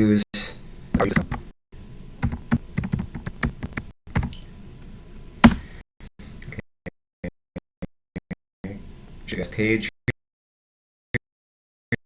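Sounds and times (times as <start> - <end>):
keyboard key clicks: 5.4 - 5.7.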